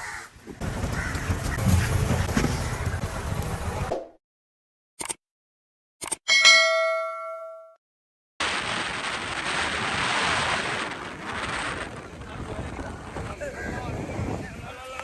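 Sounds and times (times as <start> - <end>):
short clicks: 5.0 - 5.2
metallic bell chime: 6.3 - 7.8
wind and sea noise: 8.5 - 15.0.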